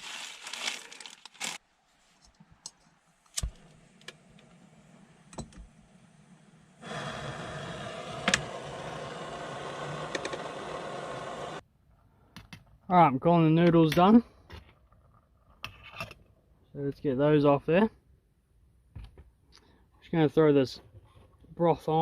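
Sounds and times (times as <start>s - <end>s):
plastic packet crinkling: 0.0s - 1.6s
camp stove burner hissing: 3.4s - 11.6s.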